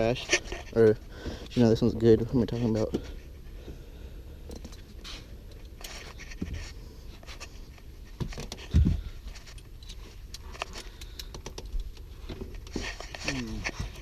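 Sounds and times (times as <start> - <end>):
hands clicking and scraping parts: 4.5 - 14.0.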